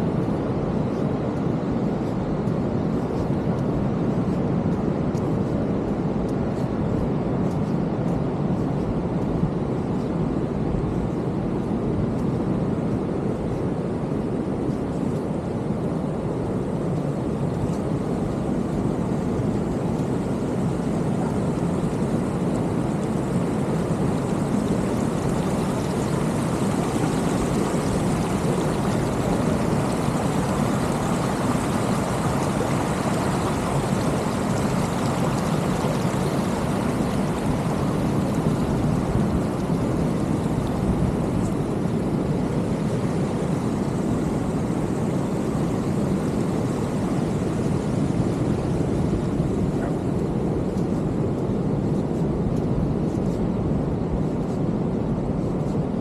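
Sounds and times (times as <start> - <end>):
ocean surf breaking: 19.2 - 44.9.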